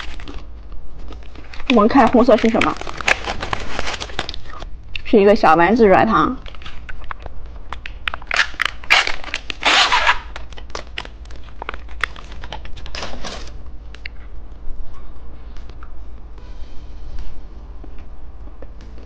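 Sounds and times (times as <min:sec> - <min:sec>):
plastic wrapper crinkling: 0:00.0 - 0:04.7, 0:06.4 - 0:14.2
plastic wrapper ripping: 0:00.0 - 0:04.7, 0:06.4 - 0:14.1.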